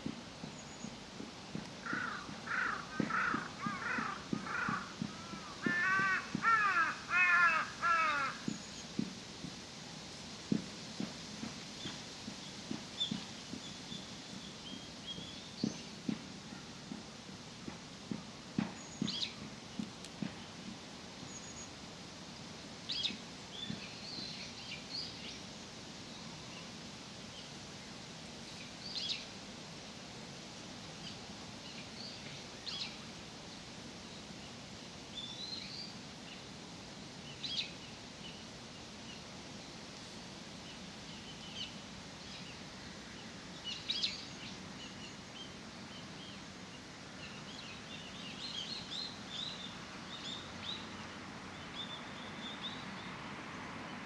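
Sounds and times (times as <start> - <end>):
outdoor ambience hush: 0.0 - 54.0.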